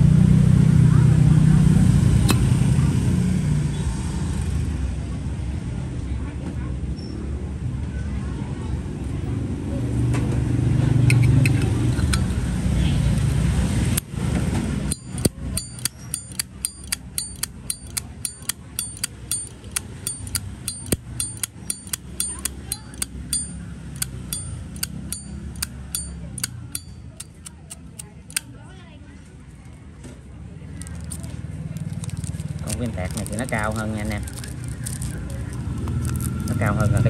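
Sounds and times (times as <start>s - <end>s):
low traffic rumble: 0.0s - 37.0s
lighter lid clinking open and shut: 14.9s - 28.4s.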